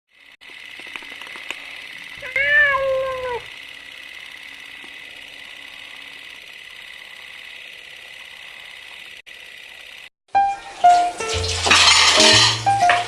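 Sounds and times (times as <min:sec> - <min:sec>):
cat meowing: 0:02.2 - 0:03.5.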